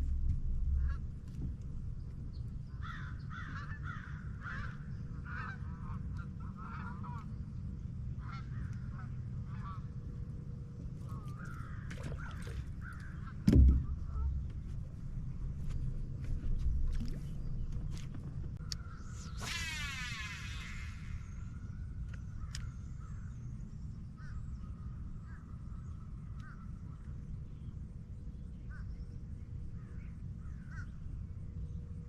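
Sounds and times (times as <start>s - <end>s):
low hum: 0.0s - 32.0s
sharp knock: 13.5s - 14.4s.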